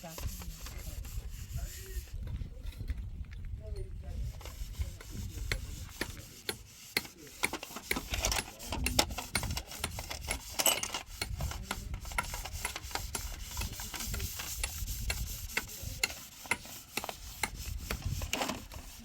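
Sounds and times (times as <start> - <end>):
scraping and rubbing: 0.0 - 3.0, 4.0 - 19.0.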